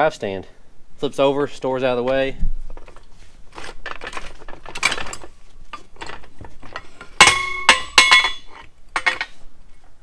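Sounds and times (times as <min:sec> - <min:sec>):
sharp ringing metal clanks: 0:07.2 - 0:09.3.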